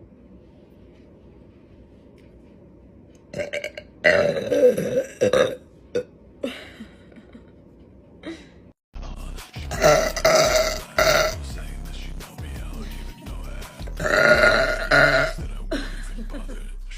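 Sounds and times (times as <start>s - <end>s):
woman burping: 3.4s - 6.1s, 9.7s - 11.4s, 14.0s - 15.4s.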